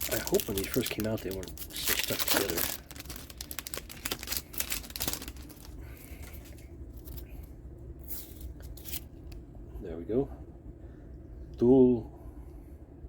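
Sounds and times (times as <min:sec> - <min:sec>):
plastic cards clicking apart: 0:00.0 - 0:07.2.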